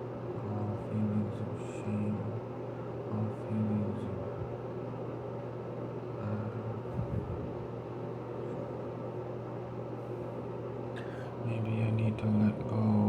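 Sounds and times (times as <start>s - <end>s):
room noise hum and hiss: 0.0s - 13.0s.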